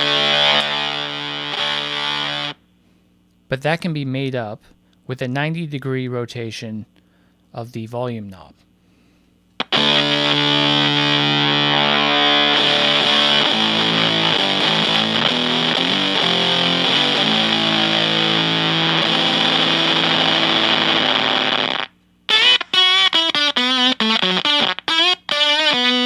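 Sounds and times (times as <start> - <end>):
fuzz electric guitar chords: 0.0 - 2.6, 9.6 - 26.0.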